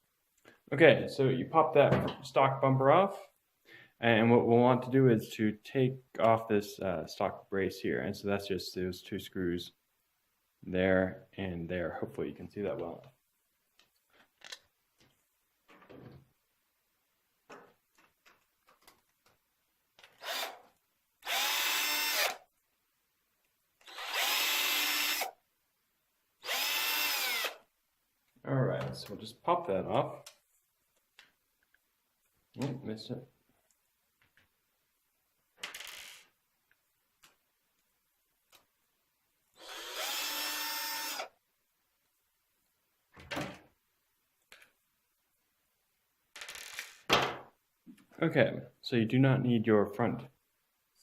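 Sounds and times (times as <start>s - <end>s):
power screwdriver whirring: 20.2s - 20.6s, 21.2s - 22.4s, 23.8s - 25.3s, 26.4s - 27.6s, 39.6s - 41.3s.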